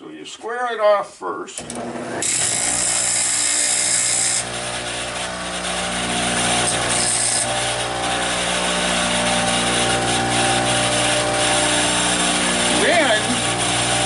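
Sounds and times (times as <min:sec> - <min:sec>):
bench grinder motor humming: 0:01.6 - 0:14.0.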